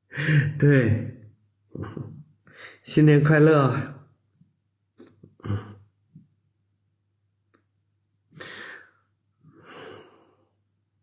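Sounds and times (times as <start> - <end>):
man sighing: 8.4 - 8.9.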